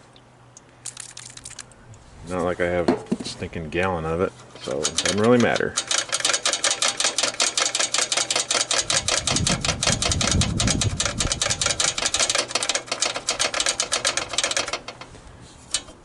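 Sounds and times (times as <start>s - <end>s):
ratchet wrench clicking: 4.8s - 15.1s.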